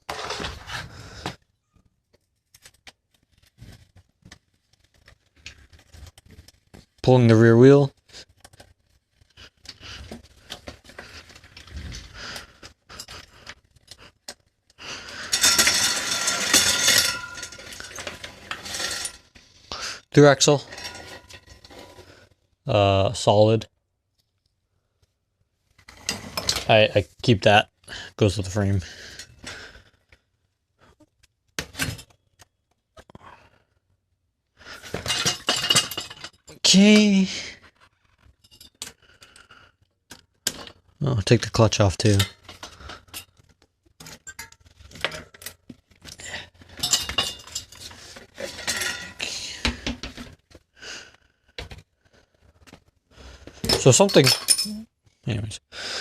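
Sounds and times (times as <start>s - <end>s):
metal bike parts clinking: 15.1s - 19.3s, 20.4s - 21.8s, 34.9s - 36.6s, 44.0s - 49.8s, 53.6s - 54.8s.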